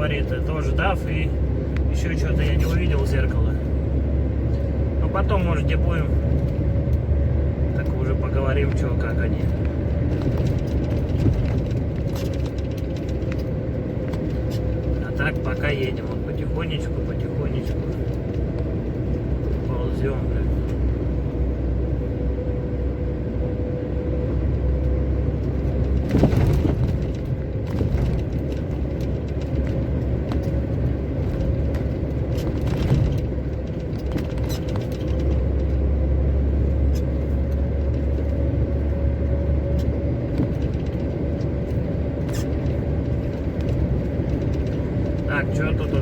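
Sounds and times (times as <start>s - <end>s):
truck engine droning: 0.0s - 46.0s
truck cab jolts: 25.8s - 35.7s.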